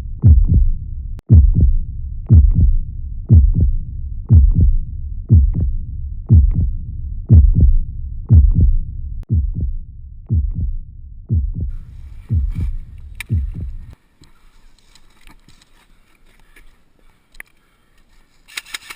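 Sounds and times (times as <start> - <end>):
heartbeat thumps: 0.0 - 14.0
low rumble: 0.0 - 14.0.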